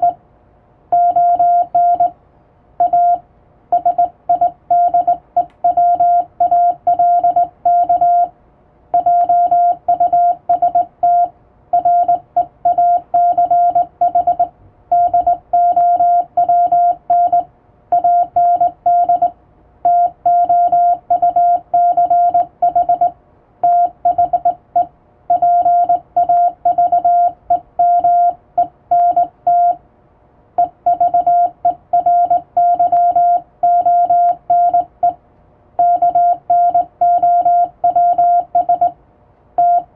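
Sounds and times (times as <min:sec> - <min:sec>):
morse code beeps: 0:01.0 - 0:02.2, 0:02.8 - 0:08.3, 0:09.0 - 0:29.8, 0:30.6 - 0:35.2, 0:35.8 - 0:39.0, 0:39.6 - 0:39.9.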